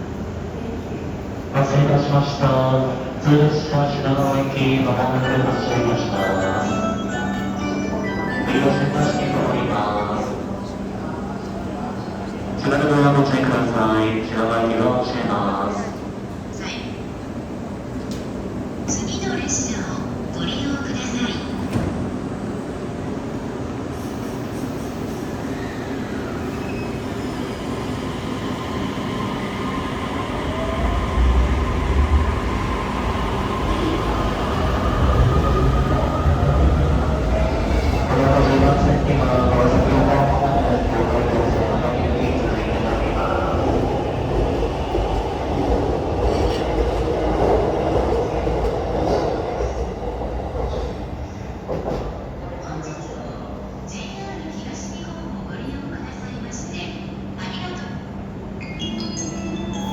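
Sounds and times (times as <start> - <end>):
electric train rumble: 16.1 - 52.5.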